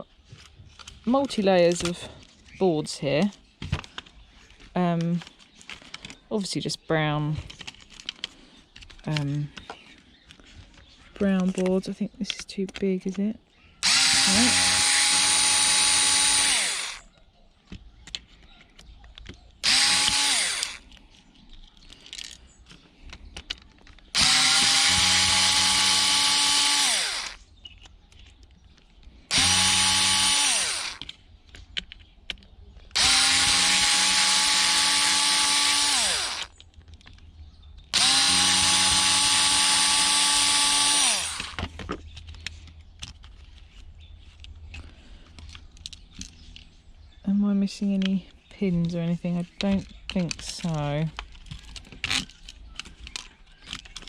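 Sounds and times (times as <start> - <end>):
cordless drill whining: 13.8 - 17.1, 19.6 - 21.0, 24.1 - 27.5, 29.3 - 31.2, 32.9 - 36.6, 37.9 - 41.7.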